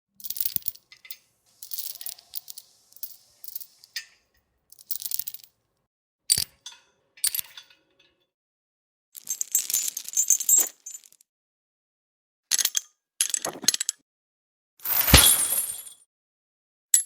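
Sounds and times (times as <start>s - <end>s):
metal chains rattling: 1.6s - 3.8s, 14.9s - 16.0s
chain clank: 14.9s - 16.0s.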